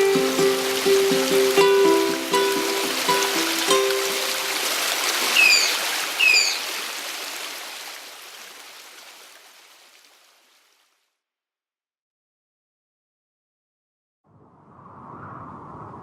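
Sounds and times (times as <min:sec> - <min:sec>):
ukulele note: 0:00.0 - 0:04.5
stream water running: 0:00.0 - 0:11.0
falling bird chirps: 0:05.2 - 0:06.8.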